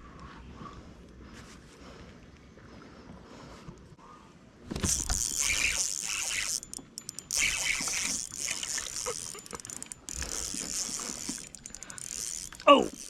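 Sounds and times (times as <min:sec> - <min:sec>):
creek water running: 0:04.8 - 0:13.0.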